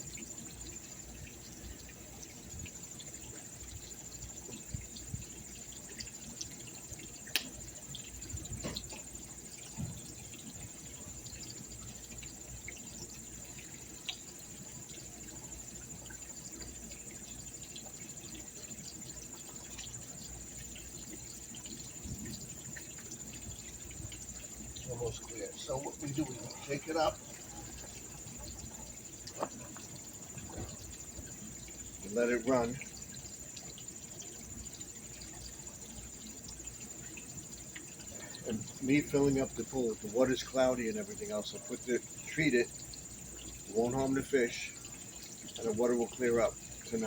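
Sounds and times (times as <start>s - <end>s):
faint running water: 0.0s - 47.0s
insects chirring: 0.0s - 47.0s
small clicks: 7.3s - 7.6s.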